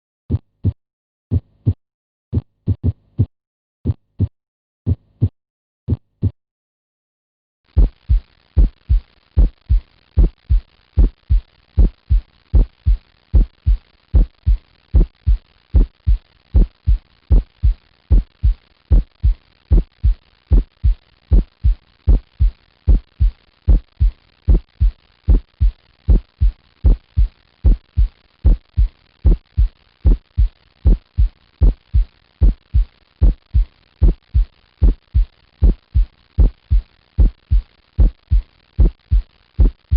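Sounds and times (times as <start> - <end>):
heartbeat thumps: 0.3 - 6.4, 7.7 - 39.9.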